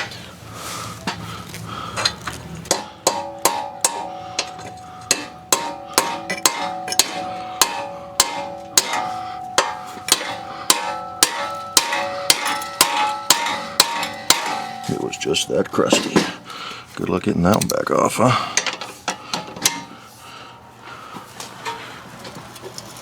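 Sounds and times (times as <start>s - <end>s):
hammer striking metal: 2.7s - 16.5s, 18.6s - 20.0s.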